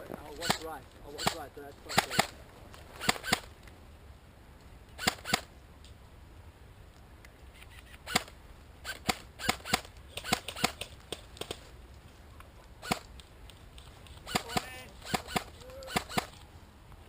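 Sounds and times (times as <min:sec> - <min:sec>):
airsoft guns firing pops: 0:00.2 - 0:02.4, 0:08.0 - 0:11.6, 0:12.8 - 0:16.4.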